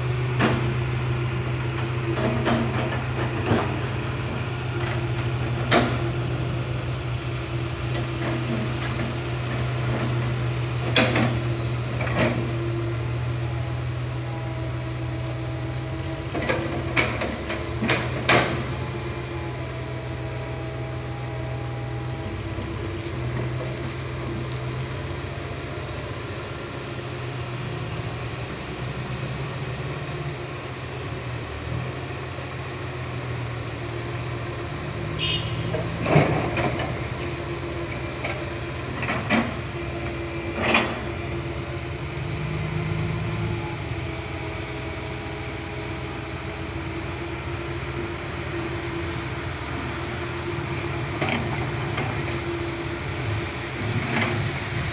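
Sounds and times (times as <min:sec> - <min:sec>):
excavator diesel engine running: 0:00.0 - 0:54.9.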